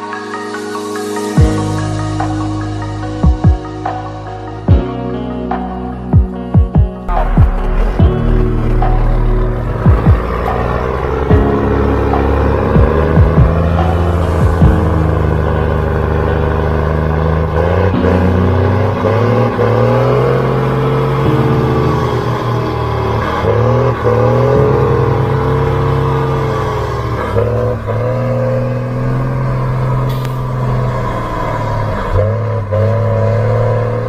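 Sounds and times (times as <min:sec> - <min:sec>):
diesel truck engine running: 0:01.2 - 0:34.0.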